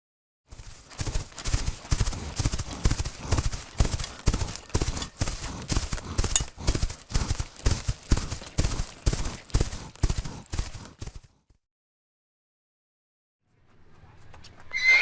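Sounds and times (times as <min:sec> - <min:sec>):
horse hoofbeats: 0:00.5 - 0:11.4.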